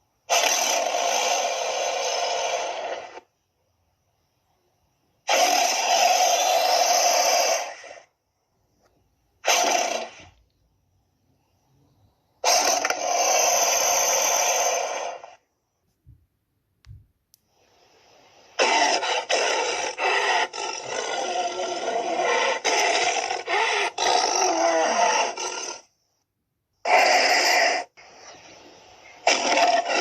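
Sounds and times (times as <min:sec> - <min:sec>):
dinosaur roar: 0:18.6 - 0:25.9, 0:29.2 - 0:30.0.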